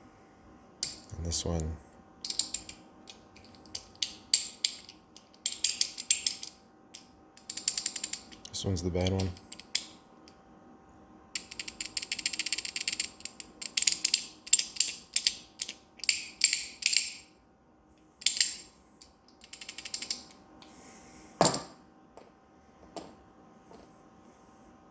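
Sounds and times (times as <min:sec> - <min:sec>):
bearing clicking and rattling: 0:02.3 - 0:10.0, 0:11.4 - 0:17.3, 0:18.2 - 0:20.4.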